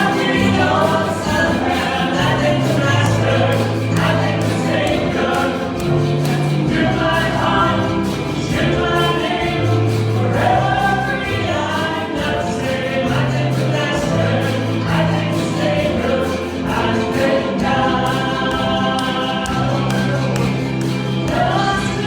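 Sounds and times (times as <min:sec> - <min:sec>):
choir singing a hymn: 0:00.0 - 0:22.0
instrumental accompaniment: 0:00.0 - 0:22.0.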